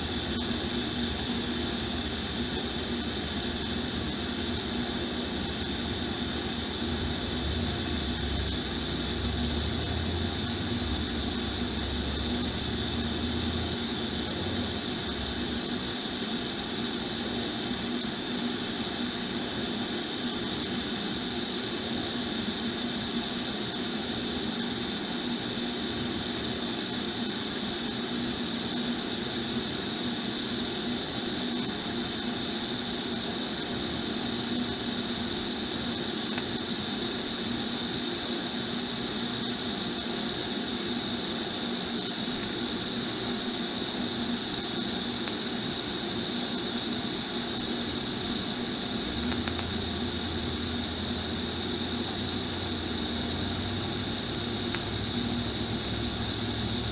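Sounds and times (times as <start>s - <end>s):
low hum: 0.0s - 15.6s
welding arc hissing: 0.0s - 56.9s.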